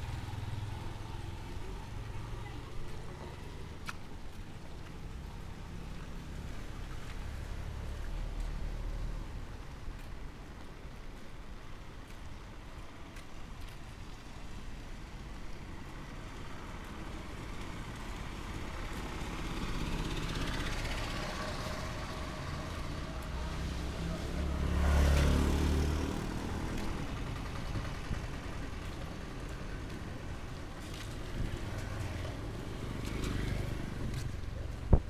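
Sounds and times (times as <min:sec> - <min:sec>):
motor vehicle passing: 0:19.3 - 0:30.2, 0:30.8 - 0:35.0.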